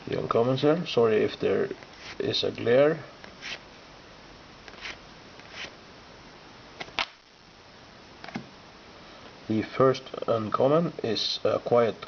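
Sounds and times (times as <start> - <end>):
trading cards sliding: 1.8 - 2.3, 3.2 - 3.6, 4.7 - 5.8.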